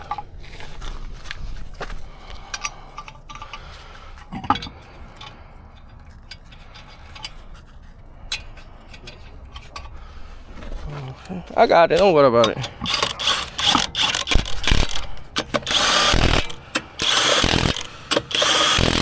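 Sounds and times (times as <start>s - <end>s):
metal tools clinking: 11.2s - 19.0s.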